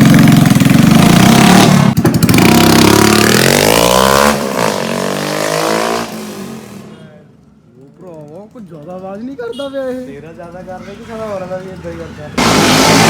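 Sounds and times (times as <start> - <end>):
motorcycle engine revving: 0.0 - 7.0, 12.4 - 13.0.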